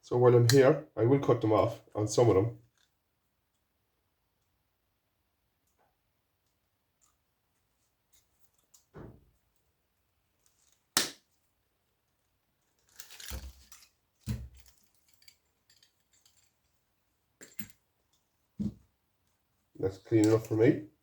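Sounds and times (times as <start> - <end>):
light metal clatter: 12.8 - 16.8.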